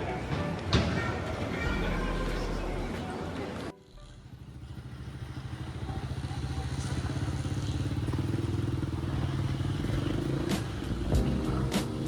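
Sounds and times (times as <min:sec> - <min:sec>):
vehicle engine running: 0:03.8 - 0:12.0.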